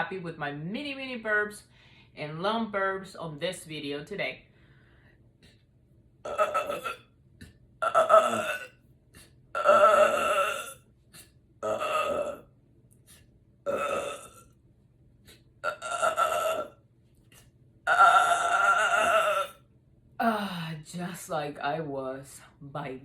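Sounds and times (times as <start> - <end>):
woman burping loudly: 6.2 - 7.1, 7.8 - 8.8, 9.5 - 10.8, 11.6 - 12.5, 13.7 - 14.6, 15.6 - 16.8, 17.9 - 19.6.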